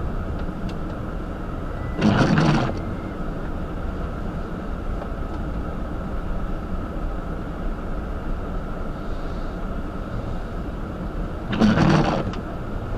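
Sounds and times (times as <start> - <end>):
car engine rumbling: 0.0 - 12.9
loud clatter: 11.5 - 12.4.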